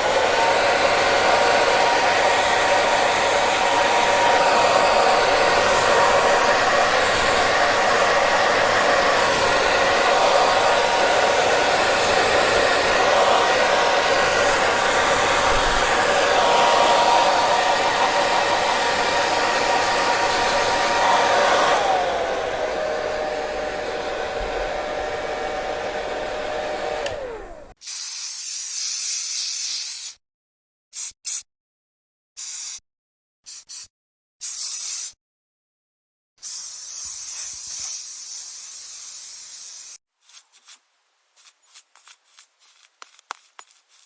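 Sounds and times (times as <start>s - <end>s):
hair dryer blowing: 0.0s - 27.8s.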